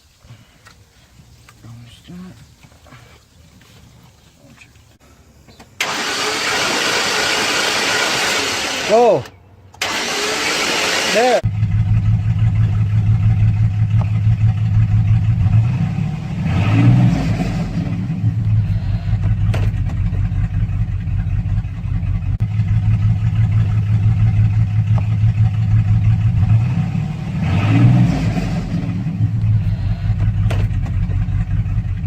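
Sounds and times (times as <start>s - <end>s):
truck engine running: 9.8s - 32.0s.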